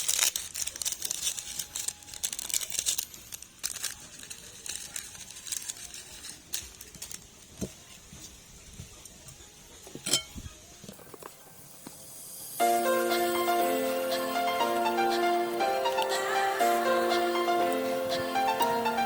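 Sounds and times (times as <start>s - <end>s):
crinkling and rustling: 0.0s - 12.0s.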